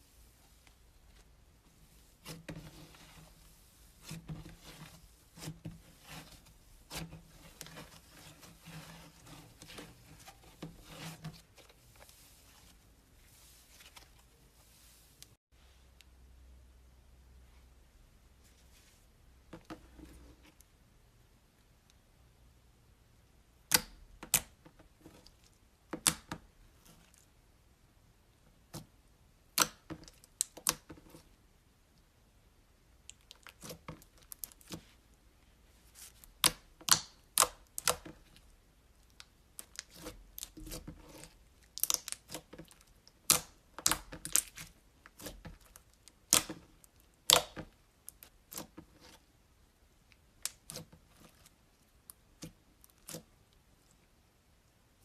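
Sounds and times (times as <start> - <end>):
slime clicking and popping: 47.2 - 47.6.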